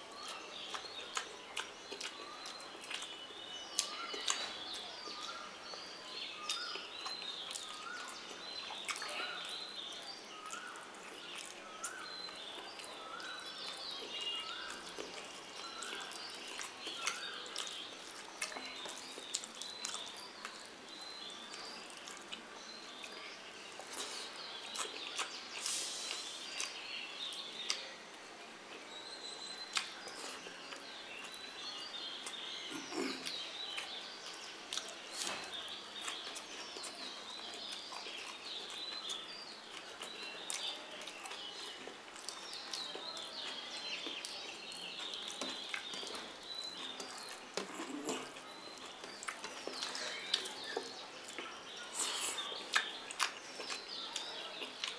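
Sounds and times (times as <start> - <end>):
birds chirping: 0.0 - 54.9
person eating clicks and smacks: 0.2 - 3.2, 6.4 - 9.2, 14.6 - 20.6, 29.7 - 31.4, 44.1 - 54.9.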